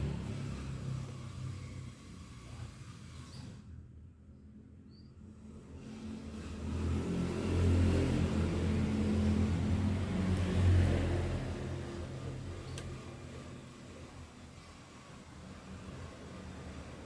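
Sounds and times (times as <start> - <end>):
vehicle engine passing by: 0.0 - 3.6, 5.4 - 13.7.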